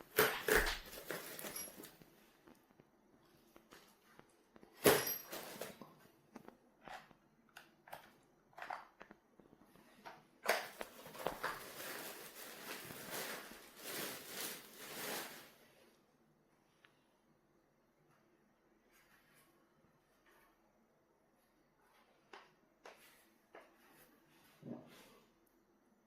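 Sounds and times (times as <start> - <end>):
rustling and scraping: 0.1 - 7.2, 9.4 - 15.7.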